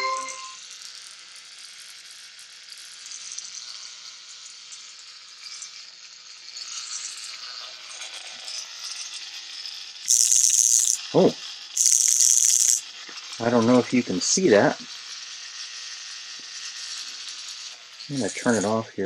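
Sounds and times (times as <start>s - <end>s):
electrical hissing crackling buzz: 10.1s - 12.8s.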